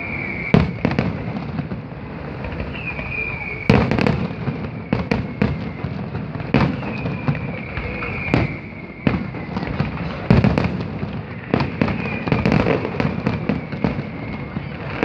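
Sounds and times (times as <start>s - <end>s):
fireworks bangs: 0.0s - 15.0s
fireworks crackling: 0.0s - 15.0s
high steady whistle: 0.0s - 15.0s.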